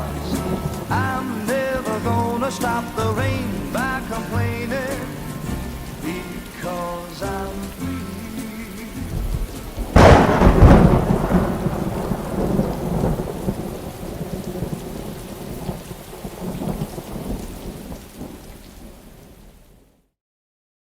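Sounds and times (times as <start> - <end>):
rain falling: 0.0 - 20.1
thunder crack and rumble: 9.1 - 19.4.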